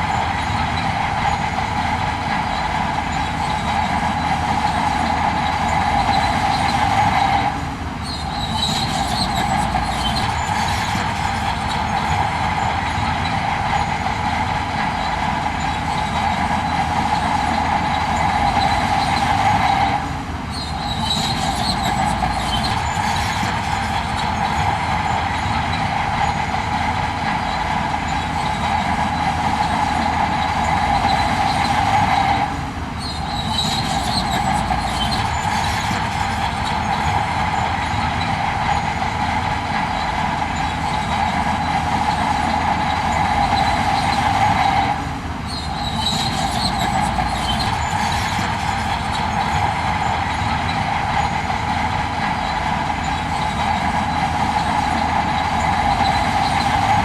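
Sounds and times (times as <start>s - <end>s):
heavy machinery running: 0.0s - 57.0s
machinery whine: 0.0s - 57.0s
faint squeaks: 8.0s - 14.0s, 20.5s - 29.7s, 33.0s - 44.7s, 45.4s - 57.0s.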